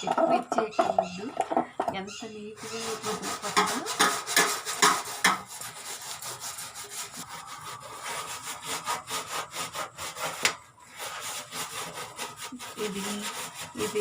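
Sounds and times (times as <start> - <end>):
sponge scrubbing a surface: 2.6 - 14.0.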